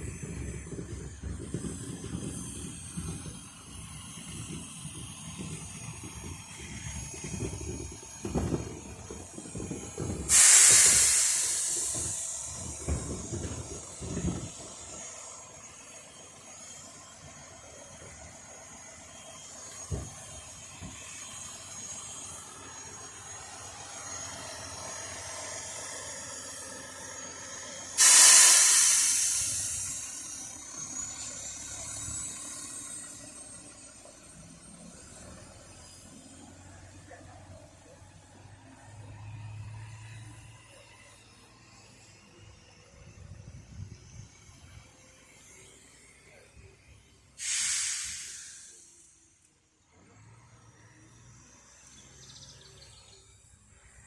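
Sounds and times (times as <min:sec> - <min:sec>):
heavy machinery rumbling and knocking: 0:00.0 - 0:15.6, 0:17.9 - 0:22.5
compressed air hissing blasts: 0:08.8 - 0:15.9, 0:28.0 - 0:30.8, 0:47.4 - 0:49.1.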